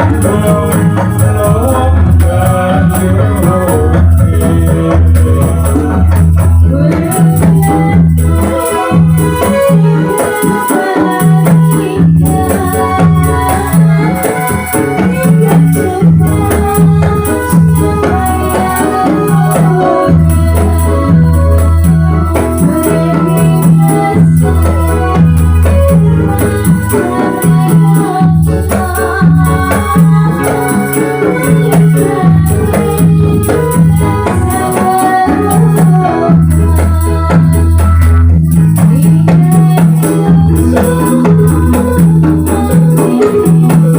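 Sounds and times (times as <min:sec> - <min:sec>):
electronic organ melody: 0:00.0 - 0:43.9
jingling rattle percussion: 0:00.0 - 0:43.9.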